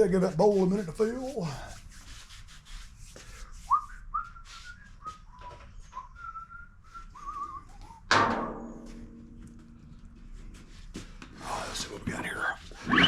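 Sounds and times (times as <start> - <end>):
person whistling a tune: 3.6 - 8.1.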